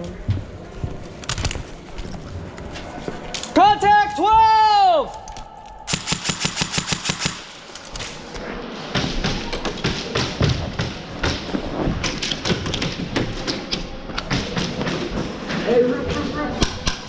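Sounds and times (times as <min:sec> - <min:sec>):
airsoft guns firing full auto: 0:05.9 - 0:07.6.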